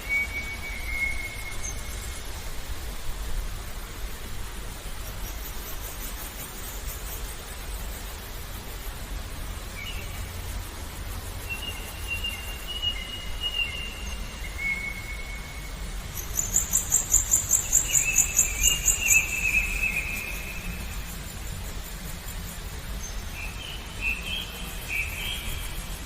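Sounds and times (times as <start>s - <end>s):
birdsong whistled notes: 0.0s - 2.2s, 11.5s - 21.0s
running water murmur: 0.0s - 26.0s.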